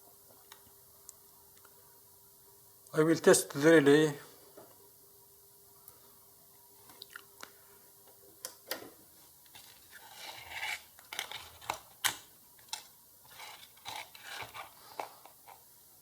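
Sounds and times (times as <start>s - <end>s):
faint steady hum: 0.0s - 16.0s
circuit board and tools handled: 9.4s - 15.6s.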